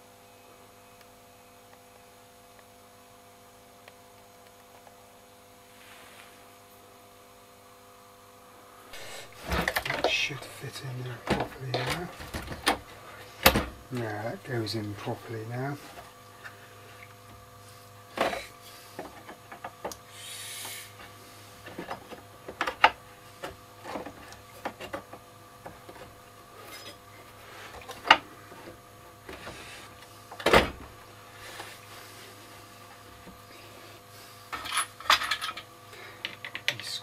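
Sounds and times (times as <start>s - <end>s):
steady low hum: 0.0s - 37.0s
small metal parts clicking and tapping: 34.5s - 37.0s.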